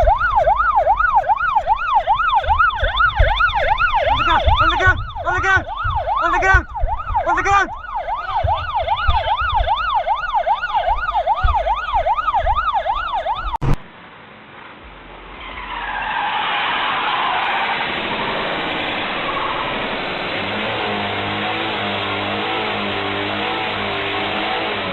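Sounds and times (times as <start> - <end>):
siren yelping: 0.0 - 13.8.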